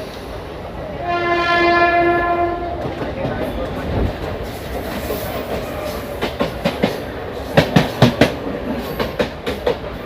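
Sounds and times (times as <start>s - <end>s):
train rumble: 0.0s - 10.0s
train wheels clacking: 2.6s - 10.0s.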